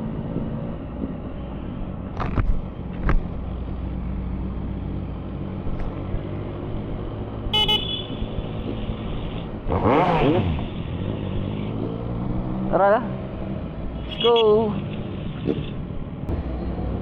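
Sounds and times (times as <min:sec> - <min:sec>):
vehicle horn toot: 0:07.5 - 0:08.3.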